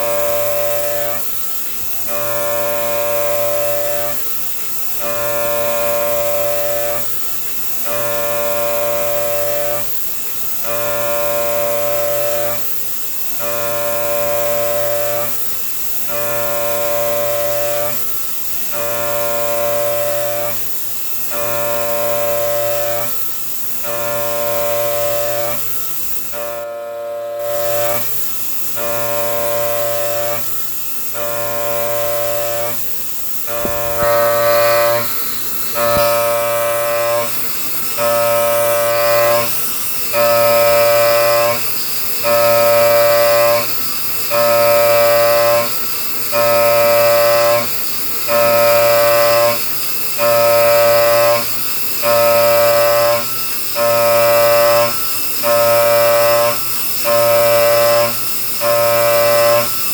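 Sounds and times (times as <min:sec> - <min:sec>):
milling cutter pitched whine: 0:00.0 - 0:59.9
high spindle hiss: 0:27.4 - 0:49.4.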